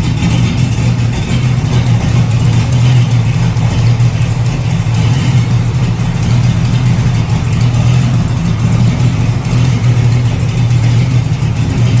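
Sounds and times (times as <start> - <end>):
car engine idling loudly: 0.0 - 12.0.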